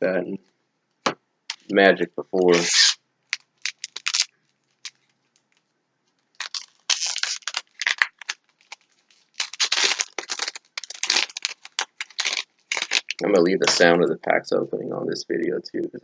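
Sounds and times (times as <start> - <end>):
foil wrapper crinkling: 2.5 - 14.0.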